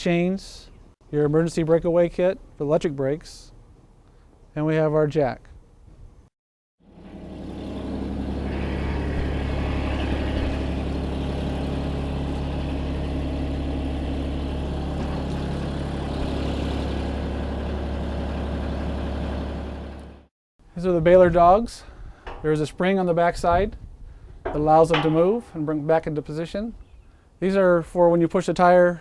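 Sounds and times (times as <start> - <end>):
machine power unit humming: 6.8 - 20.2, 20.8 - 26.9.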